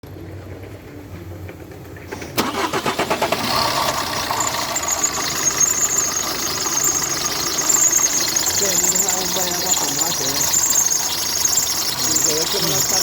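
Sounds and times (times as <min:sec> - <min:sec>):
car engine cranking and idling: 0:00.0 - 0:13.0
high steady whine: 0:03.6 - 0:13.0.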